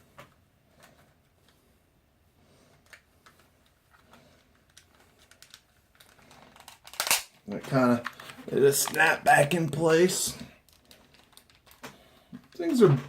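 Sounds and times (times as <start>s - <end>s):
plastic parts clicking: 2.8s - 9.1s, 10.6s - 12.8s.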